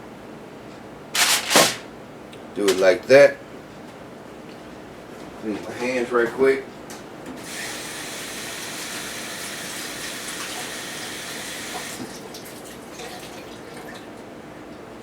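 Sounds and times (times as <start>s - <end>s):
water running from a tap: 7.6s - 12.0s.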